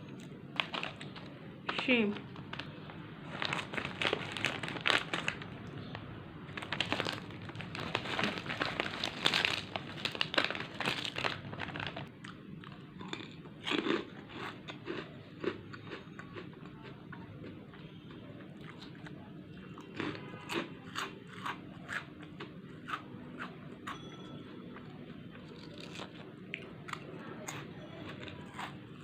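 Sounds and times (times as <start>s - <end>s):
chips being crunched: 6.6s - 12.1s.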